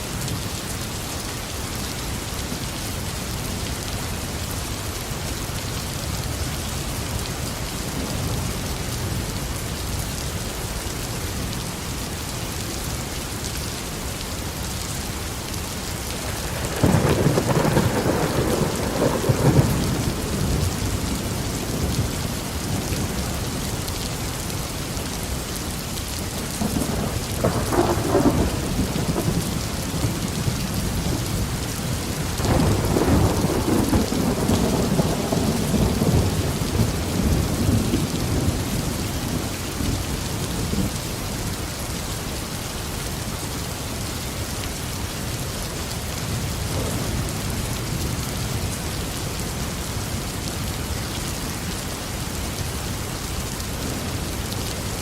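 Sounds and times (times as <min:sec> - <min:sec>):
heavy rain falling: 0:00.0 - 0:55.0
thunder rumbling: 0:16.2 - 0:23.5, 0:26.6 - 0:40.0, 0:46.7 - 0:48.8.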